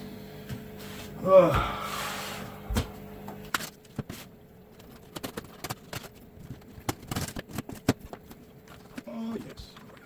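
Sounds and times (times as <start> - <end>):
packaging crinkling and clicking: 3.5 - 10.0.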